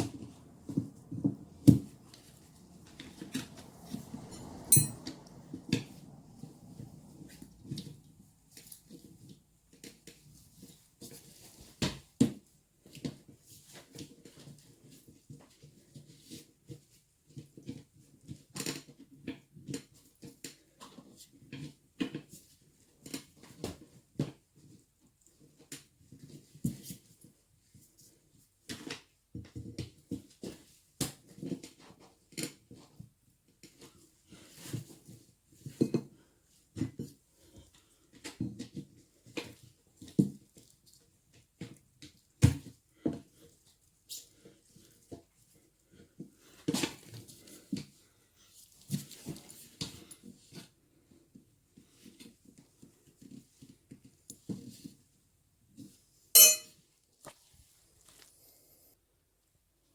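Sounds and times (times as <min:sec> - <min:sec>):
hand tools knocking and clinking: 0:04.3 - 0:05.1, 0:56.4 - 0:56.7.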